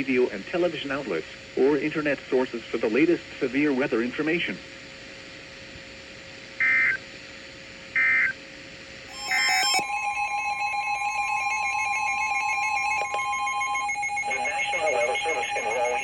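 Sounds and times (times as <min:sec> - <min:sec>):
rapid ringing trill: 0:09.1 - 0:16.0
screeching digital data bursts: 0:09.1 - 0:16.0
steady electronic alert tone: 0:09.1 - 0:16.0.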